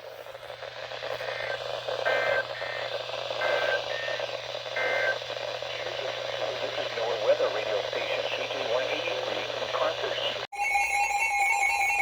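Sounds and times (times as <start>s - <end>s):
radio static: 0.0s - 10.5s
steady low hum: 0.0s - 10.5s
buzzy two-tone data screeches: 1.1s - 5.2s.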